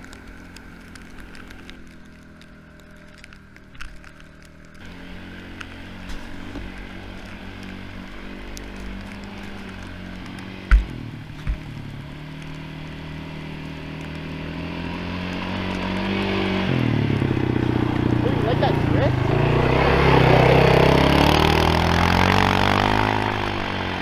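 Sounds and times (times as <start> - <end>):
quad engine running: 0.0 - 24.0
low thumps: 5.6 - 12.8.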